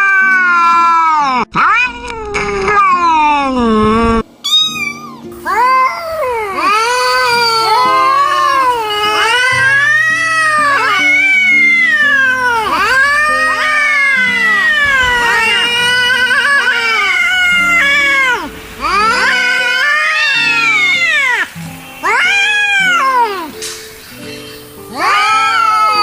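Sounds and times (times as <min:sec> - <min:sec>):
angry cats yowling: 0:00.0 - 0:26.0.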